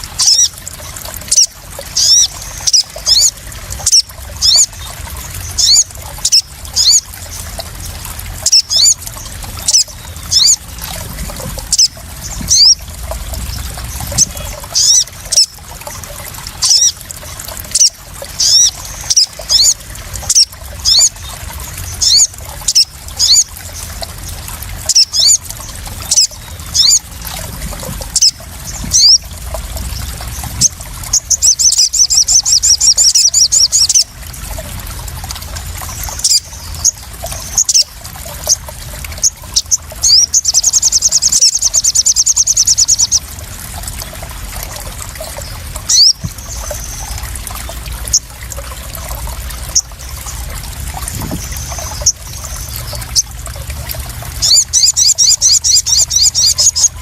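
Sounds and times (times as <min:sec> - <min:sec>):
splashing trickling water: 0:00.0 - 0:57.0
bird chirping calls: 0:01.3 - 0:07.6, 0:08.4 - 0:10.8, 0:11.7 - 0:16.0, 0:24.8 - 0:27.1, 0:28.1 - 0:34.1, 0:45.2 - 0:47.2, 0:54.4 - 0:57.0.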